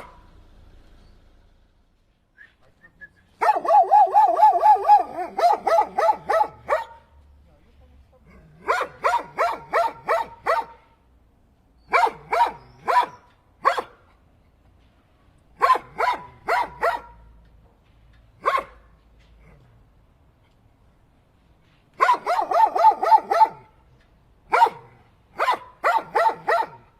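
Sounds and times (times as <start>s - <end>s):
dog barking: 0.0s - 0.3s, 3.4s - 7.2s, 8.6s - 10.9s, 11.9s - 14.0s, 15.6s - 17.3s, 18.4s - 18.9s, 22.0s - 23.8s, 24.5s - 26.9s.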